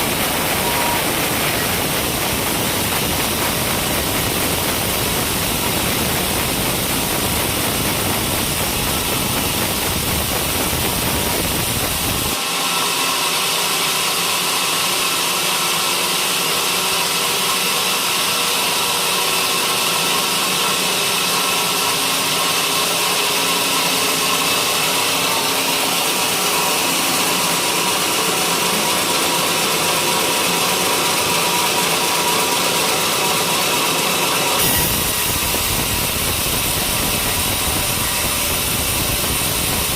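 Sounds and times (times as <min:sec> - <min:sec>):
sawmill blade sawing timber: 0:00.0 - 0:11.0
high whine with steady tones: 0:00.0 - 0:12.9, 0:33.1 - 0:39.9.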